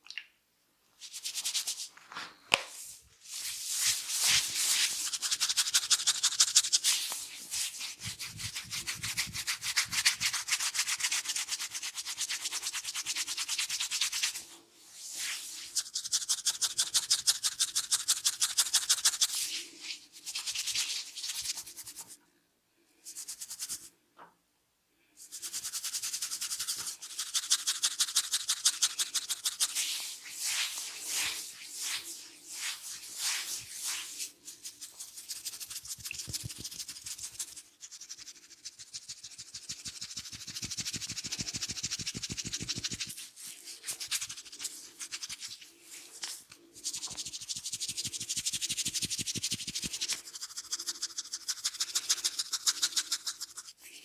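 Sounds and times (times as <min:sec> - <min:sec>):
hands rubbing hair: 0:01.0 - 0:11.3, 0:25.3 - 0:54.0.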